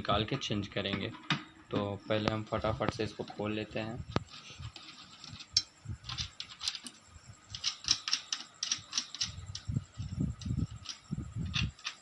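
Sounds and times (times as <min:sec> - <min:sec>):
hand tool clicking on metal nuts: 0:05.2 - 0:09.7.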